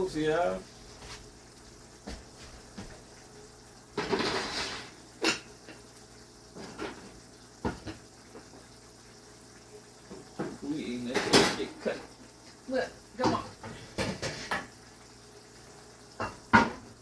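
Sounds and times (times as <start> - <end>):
cookware scraping: 4.0 - 5.5, 13.2 - 14.8.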